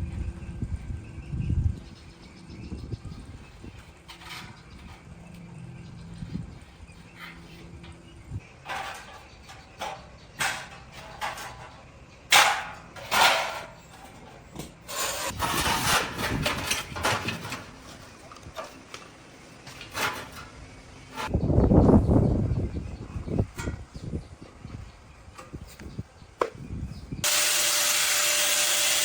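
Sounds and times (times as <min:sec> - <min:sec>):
tool scraping: 0:08.6 - 0:18.9.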